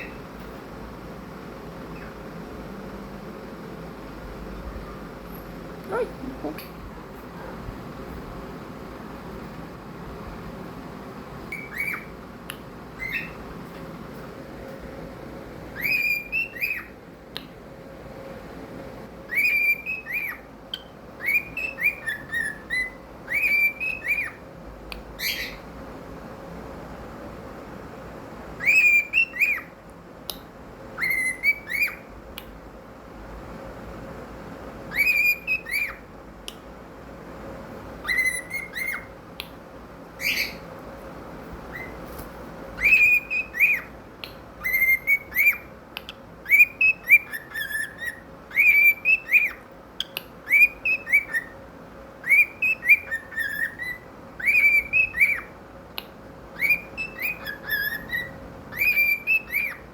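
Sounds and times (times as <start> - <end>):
cockatiel whistling: 11.5 - 12.1, 13.0 - 13.4, 15.8 - 17.0, 19.3 - 24.4, 25.2 - 25.6, 28.6 - 29.8, 31.0 - 32.1, 34.9 - 36.1, 38.0 - 39.2, 40.2 - 40.7, 41.7 - 42.0, 42.8 - 44.0, 44.6 - 51.6, 52.2 - 55.5, 56.5 - 59.9.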